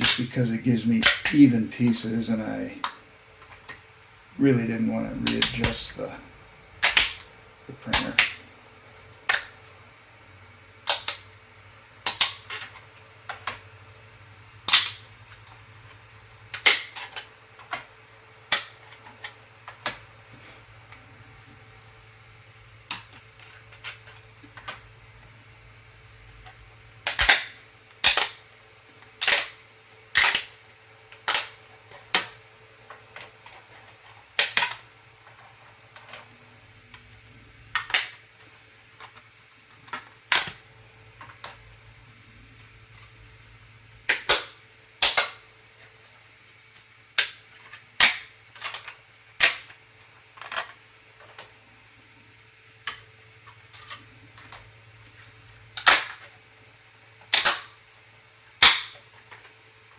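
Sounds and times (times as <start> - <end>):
faint steady hum: 0.0 - 59.9
plastic cracking: 57.3 - 57.8.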